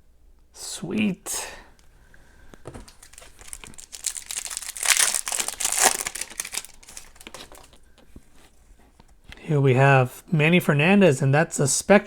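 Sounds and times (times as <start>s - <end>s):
wrapper crinkling as torn open: 2.7s - 7.8s.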